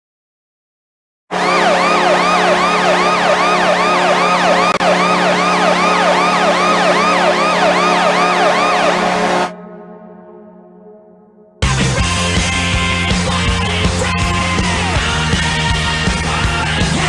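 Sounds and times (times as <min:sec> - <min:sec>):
goal horn low tone: 0:01.3 - 0:09.5
siren wail sweeping up and down: 0:01.3 - 0:09.5.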